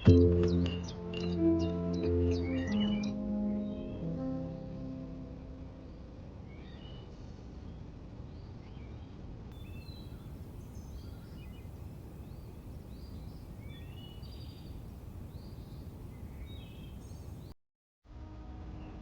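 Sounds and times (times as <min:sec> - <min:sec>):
birds chirping: 0:09.6 - 0:17.6
low background rumble: 0:09.6 - 0:17.6.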